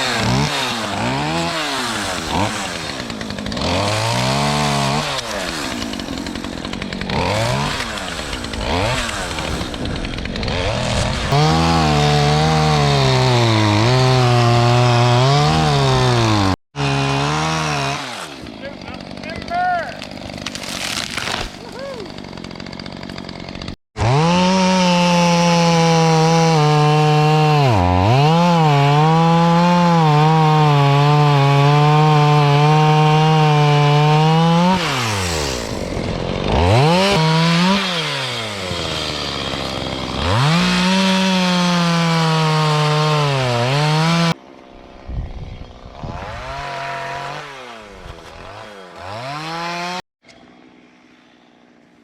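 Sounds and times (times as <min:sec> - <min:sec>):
chainsaw cutting wood: 0:00.0 - 0:52.0.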